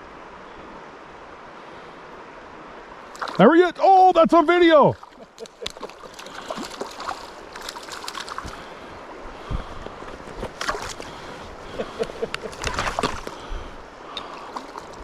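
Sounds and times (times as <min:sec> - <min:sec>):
stream running: 0:00.0 - 0:15.0
water splashing: 0:03.0 - 0:15.0.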